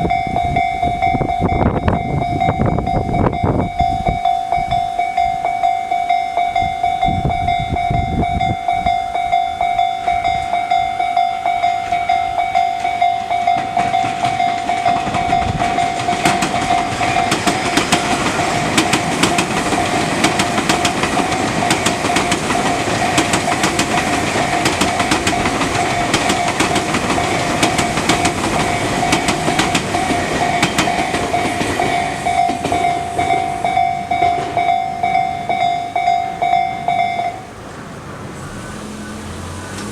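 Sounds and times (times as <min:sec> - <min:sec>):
level crossing warning bell: 0:00.0 - 0:37.7
train running noise: 0:00.0 - 0:39.9
train wheels clacking over rail joints: 0:08.8 - 0:37.4.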